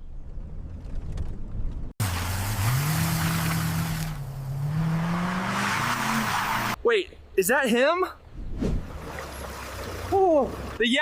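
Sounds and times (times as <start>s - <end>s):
road and wind noise: 0.0s - 7.4s, 8.2s - 11.0s
car engine revving: 2.0s - 6.8s.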